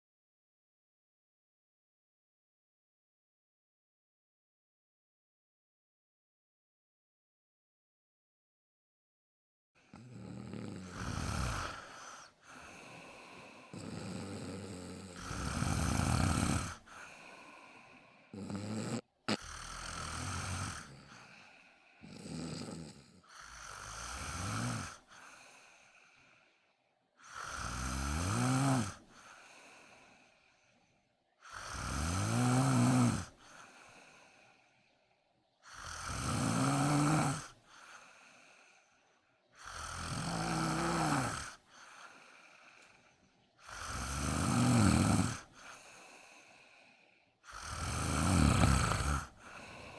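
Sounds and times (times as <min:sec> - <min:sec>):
quiet breaths: 0:09.8 - 0:49.9
person snoring loudly: 0:09.9 - 0:26.4, 0:27.2 - 0:30.7, 0:31.4 - 0:34.4, 0:35.6 - 0:38.6, 0:39.6 - 0:43.0, 0:43.6 - 0:49.9.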